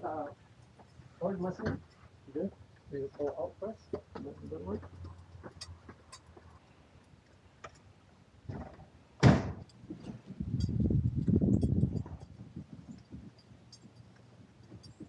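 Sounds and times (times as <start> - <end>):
door banging: 8.5 - 9.7
low rough rumble: 10.0 - 13.3.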